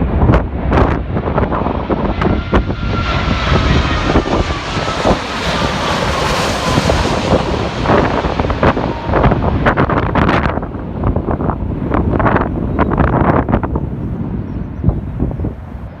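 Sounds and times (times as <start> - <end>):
jet airliner passing: 0.0 - 16.0
wind buffeting microphone: 0.0 - 16.0
thin descending whine: 1.9 - 10.4.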